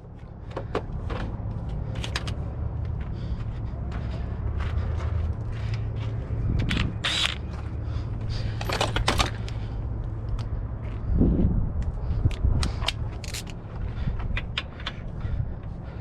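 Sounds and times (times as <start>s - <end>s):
steady low hum: 0.0s - 16.0s
hand tools clinking and scraping: 13.1s - 13.6s.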